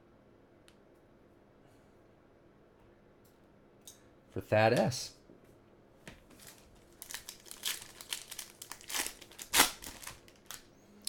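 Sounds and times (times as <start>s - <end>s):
plastic wrapper tearing and crinkling: 6.4s - 10.7s.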